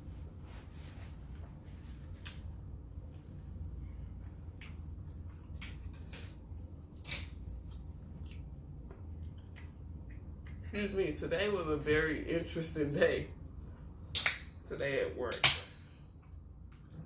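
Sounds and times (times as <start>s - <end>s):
low steady hum: 0.0s - 17.0s
wet mouth smacks while chewing: 4.5s - 10.6s.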